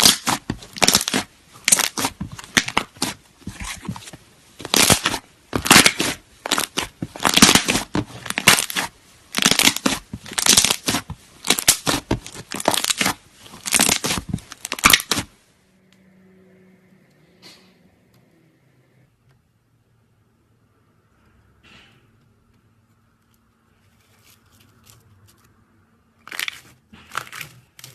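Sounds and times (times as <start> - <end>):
slime squishing and crackling: 0.0 - 15.4, 26.2 - 27.9.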